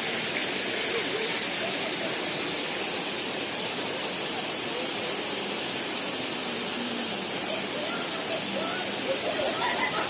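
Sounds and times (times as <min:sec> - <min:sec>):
waterfall rushing: 0:00.0 - 0:10.0
faint voices: 0:03.8 - 0:10.0.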